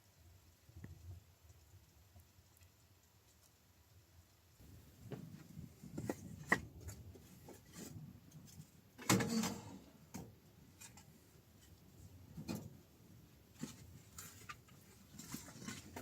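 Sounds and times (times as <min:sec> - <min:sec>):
objects being handled: 0:04.6 - 0:12.8, 0:13.5 - 0:16.0.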